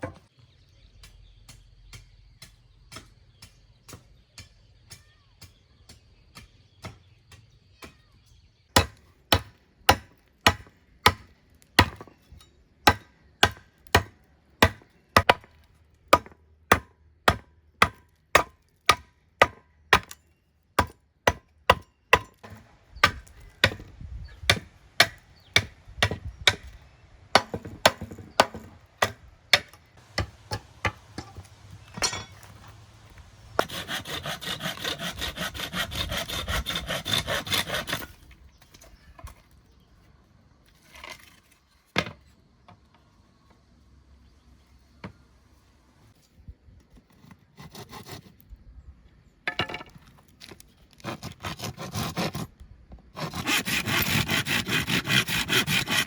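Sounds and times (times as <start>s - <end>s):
hand tool striking wood: 8.8s - 12.2s, 12.8s - 15.5s, 16.1s - 20.2s, 20.8s - 23.9s, 24.5s - 26.7s, 27.3s - 32.8s, 33.6s - 38.1s.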